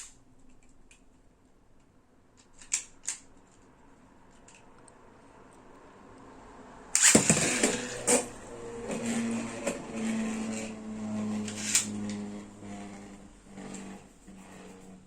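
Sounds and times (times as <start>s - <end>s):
spinning top whirring hum: 6.4s - 15.0s
spinning top launch rip: 7.0s - 8.4s.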